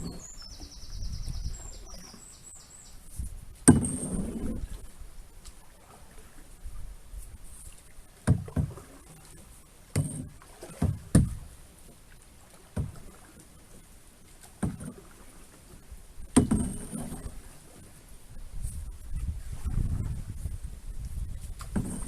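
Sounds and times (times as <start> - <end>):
oars knocking against boat: 0.0 - 2.2, 3.5 - 4.8, 7.8 - 18.0, 21.2 - 22.0.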